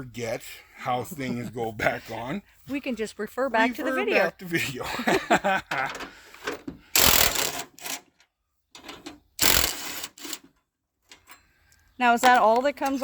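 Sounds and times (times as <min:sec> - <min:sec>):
power tool loosening bolts: 0:05.7 - 0:08.2, 0:08.8 - 0:11.4, 0:12.3 - 0:13.0
small metallic clicks: 0:05.9 - 0:13.0.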